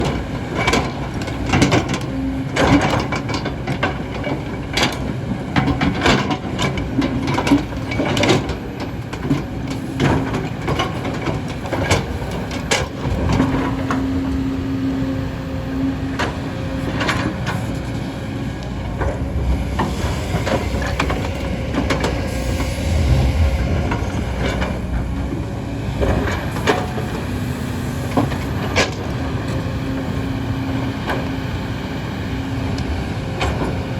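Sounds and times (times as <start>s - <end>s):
diesel engine running: 13.6s - 33.2s
hydraulic whine: 17.4s - 28.7s.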